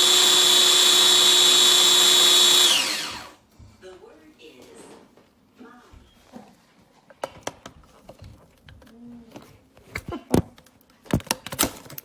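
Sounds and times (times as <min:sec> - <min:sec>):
plastic parts clicking and knocking: 0:09.9 - 0:12.0.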